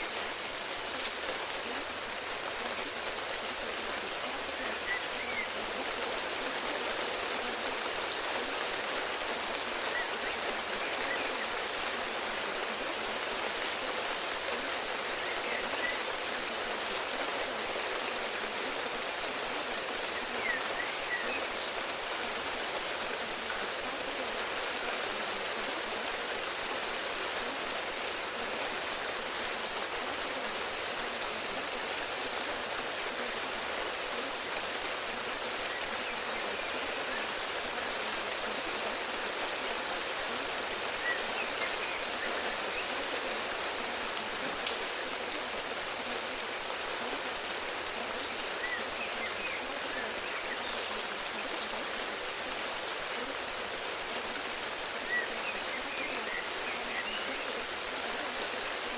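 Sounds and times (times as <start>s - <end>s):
steady rain: 0.0s - 58.9s.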